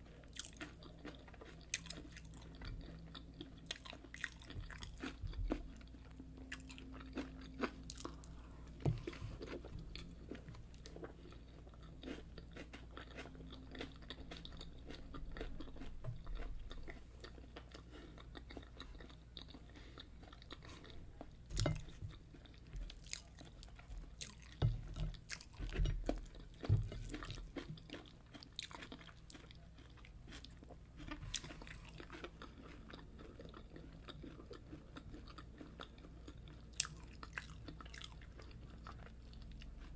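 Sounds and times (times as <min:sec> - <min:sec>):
chewing knocks: 0:23.9 - 0:28.1.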